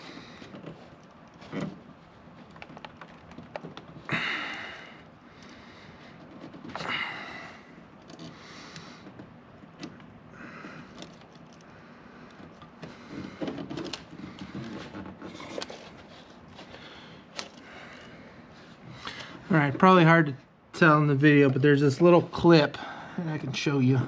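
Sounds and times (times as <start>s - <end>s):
plastic clicks and rustling: 0.2s - 4.1s, 10.8s - 17.7s.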